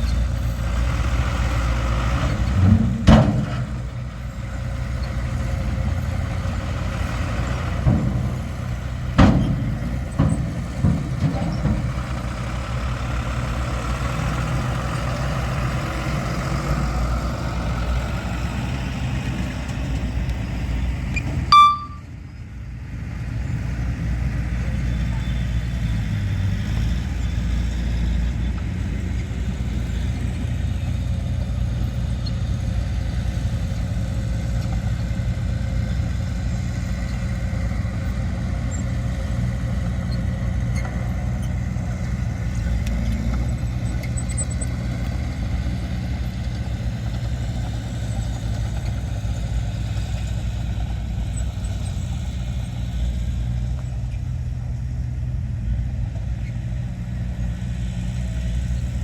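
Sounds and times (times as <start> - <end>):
diesel engine droning: 0.0 - 59.0
short high beep: 21.5 - 22.1.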